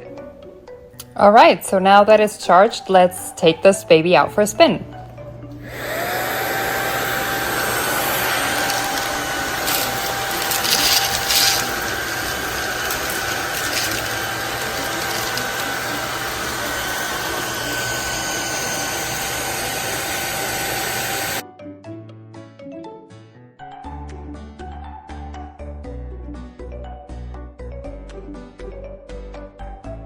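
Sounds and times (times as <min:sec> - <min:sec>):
vacuum cleaner motor whining: 0:04.5 - 0:21.4.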